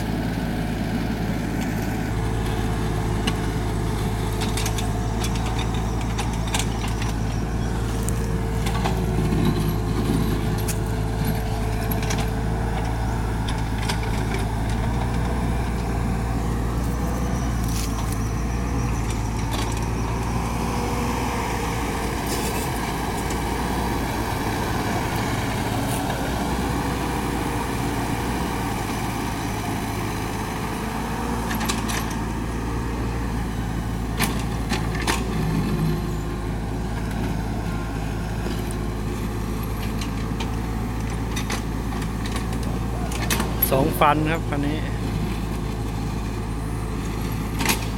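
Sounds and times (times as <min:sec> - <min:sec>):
diesel engine running: 0:00.0 - 0:47.9
bucket clanking and scraping soil: 0:22.2 - 0:22.9.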